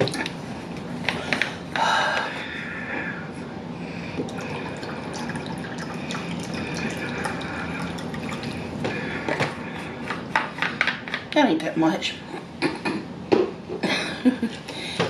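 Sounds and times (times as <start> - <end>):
liquid pouring into a cup: 4.2 - 9.1.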